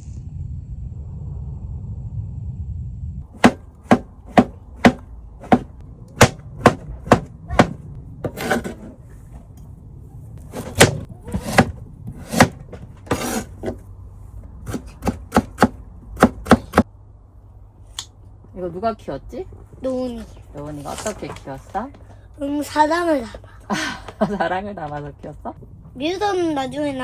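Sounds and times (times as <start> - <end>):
low rumble: 0.0 - 13.1
knife chopping on cutting board: 3.4 - 8.9, 10.6 - 13.8, 14.7 - 16.8
short scraping sounds: 3.4 - 9.4, 10.5 - 13.8.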